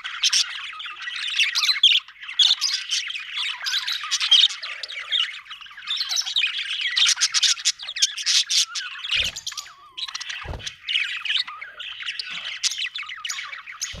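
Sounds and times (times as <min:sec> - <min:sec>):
budgerigar chattering: 0:00.0 - 0:14.0
dull low thuds: 0:09.2 - 0:09.7, 0:10.4 - 0:10.9.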